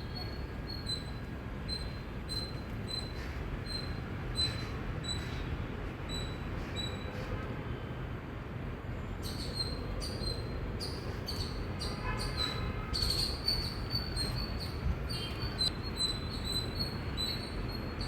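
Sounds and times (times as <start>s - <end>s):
squirrel chirping: 0.1s - 5.4s, 9.2s - 18.0s.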